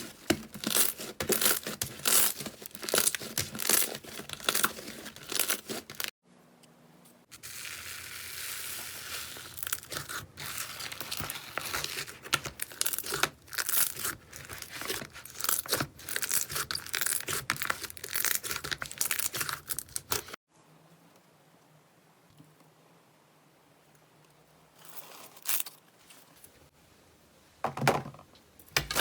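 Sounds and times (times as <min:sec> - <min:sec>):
slime squishing and crackling: 0:00.0 - 0:06.1, 0:07.4 - 0:20.4.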